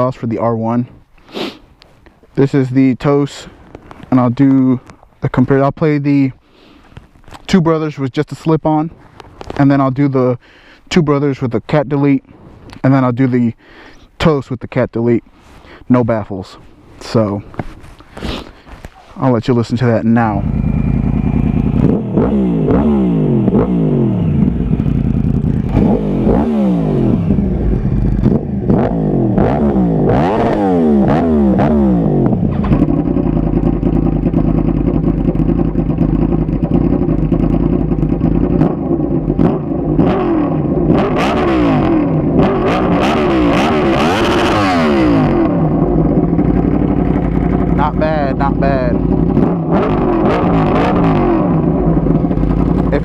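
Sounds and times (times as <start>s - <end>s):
motorcycle engine revving: 17.1s - 53.0s.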